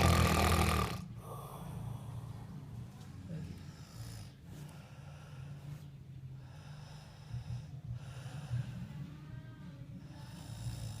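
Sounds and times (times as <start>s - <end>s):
man snoring: 0.0s - 1.6s, 10.2s - 11.0s.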